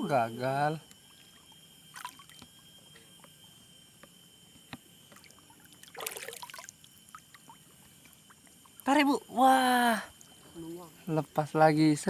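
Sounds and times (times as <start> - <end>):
water lapping and splashing: 1.1 - 3.2, 5.1 - 9.0.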